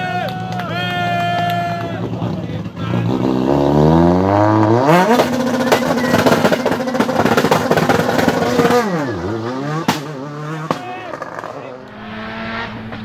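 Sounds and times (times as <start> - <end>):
car engine revving high: 2.0 - 13.0
exhaust pops and bangs: 4.6 - 11.6.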